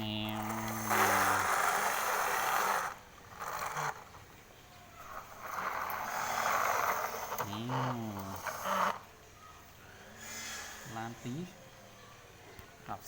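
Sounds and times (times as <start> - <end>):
plastic toys scraping and rattling: 0.0 - 4.4, 5.0 - 9.1.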